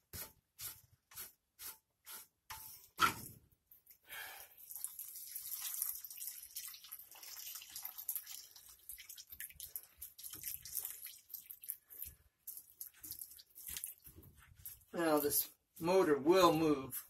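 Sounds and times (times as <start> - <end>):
water trickling and dripping: 3.7 - 15.4.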